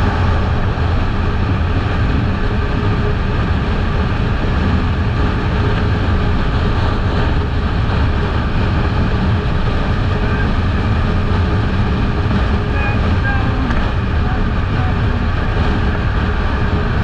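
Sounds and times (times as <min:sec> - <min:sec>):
motorcycle engine running: 0:00.0 - 0:17.0
wind on microphone: 0:00.0 - 0:17.0.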